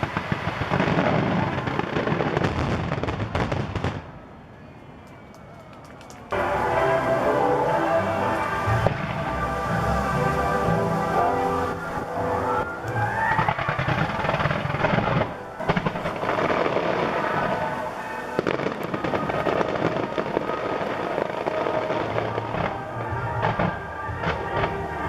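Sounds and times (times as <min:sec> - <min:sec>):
fireworks bursting and crackling: 0:00.0 - 0:04.2, 0:05.8 - 0:25.0
music playing: 0:06.3 - 0:25.0.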